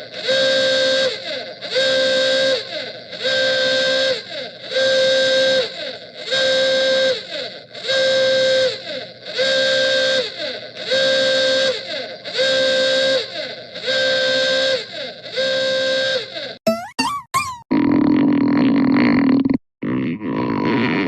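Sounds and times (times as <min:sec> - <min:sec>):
loud pitched tone blasts: 0:16.7 - 0:17.7.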